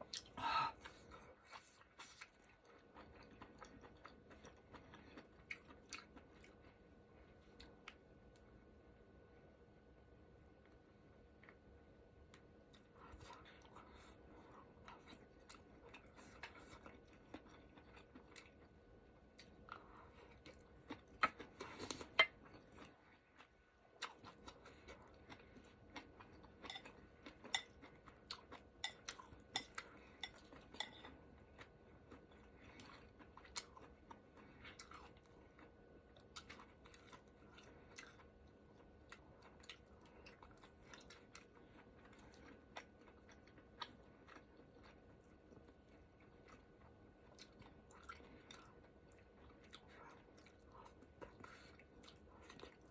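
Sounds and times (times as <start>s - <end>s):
chewing and mouth sounds: 0.0s - 8.4s, 10.5s - 52.9s.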